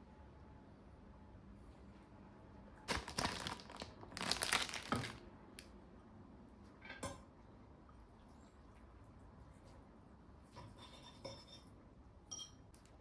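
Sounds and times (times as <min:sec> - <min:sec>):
plastic packaging crinkling: 0:02.9 - 0:05.2.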